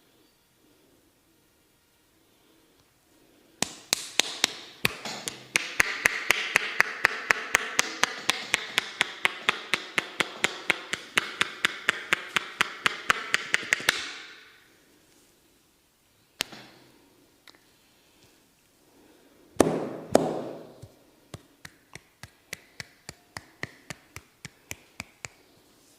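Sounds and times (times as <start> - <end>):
rapid sharp massage taps: 3.6 - 14.4, 19.6 - 25.4.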